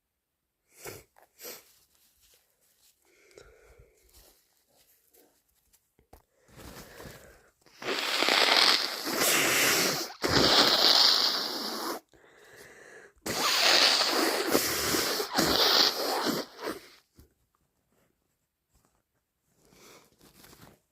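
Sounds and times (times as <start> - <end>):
person blowing nose: 0.7 - 1.8, 6.6 - 12.2, 13.2 - 17.1.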